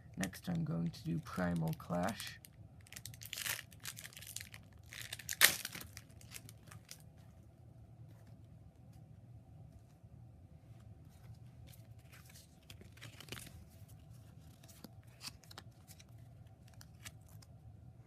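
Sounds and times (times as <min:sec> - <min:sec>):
foil wrapper tearing and crinkling: 0:01.4 - 0:07.0, 0:12.6 - 0:13.6.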